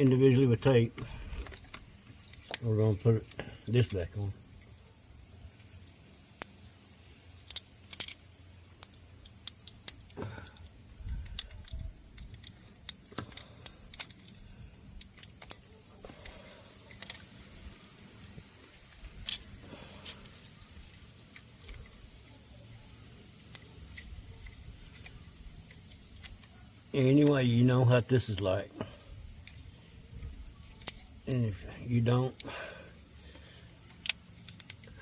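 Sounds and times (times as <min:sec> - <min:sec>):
wiring and plug rattling: 0:09.2 - 0:17.3.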